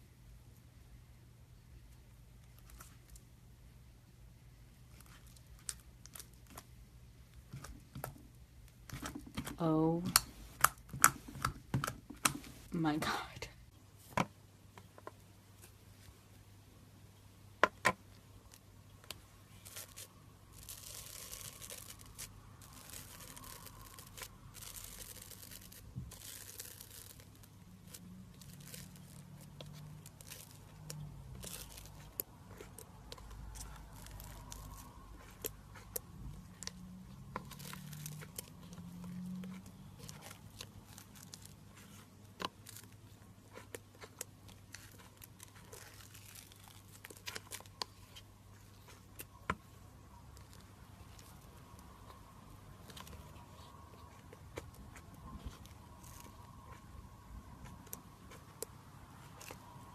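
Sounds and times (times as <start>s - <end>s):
slime crackling and tearing: 18.4s - 59.9s.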